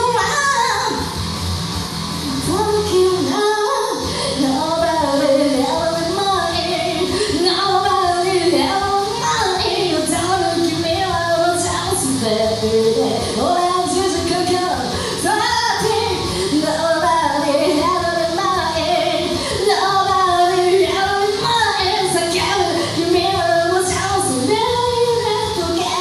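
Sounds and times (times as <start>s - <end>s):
woman singing karaoke: 0.0s - 1.2s, 2.2s - 26.0s
loud rock backing track: 0.0s - 3.1s.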